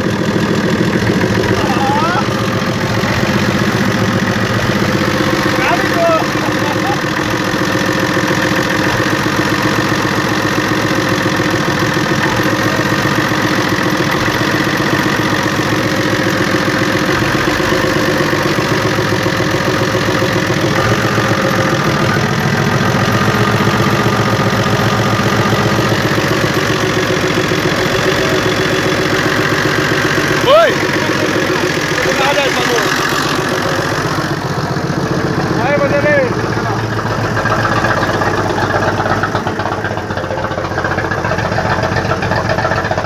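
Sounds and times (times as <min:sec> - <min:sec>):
diesel truck engine idling: 0:00.0 - 0:43.0.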